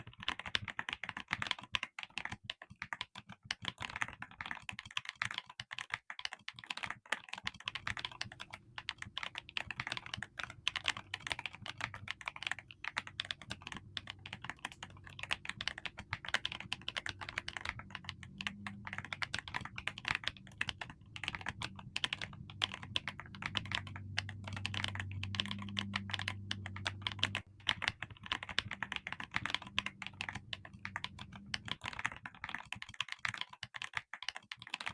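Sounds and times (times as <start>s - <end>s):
mechanical keyboard typing: 0.0s - 34.9s
faint low hum: 9.2s - 32.1s.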